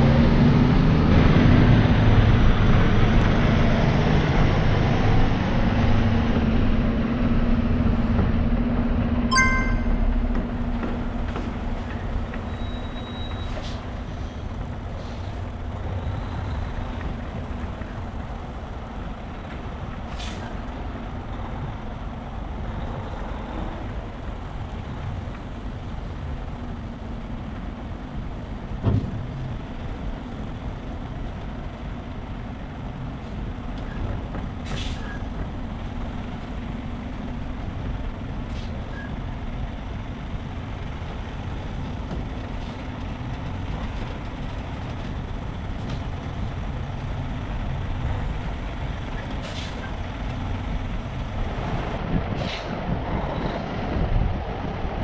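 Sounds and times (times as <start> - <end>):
truck engine and road noise: 0.0 - 55.0
thump: 28.8 - 29.2.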